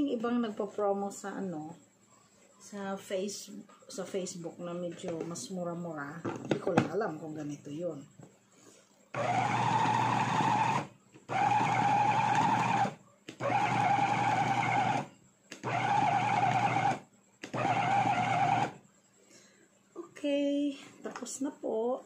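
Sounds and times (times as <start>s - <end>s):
electric meat mincer running: 9.2s - 18.8s.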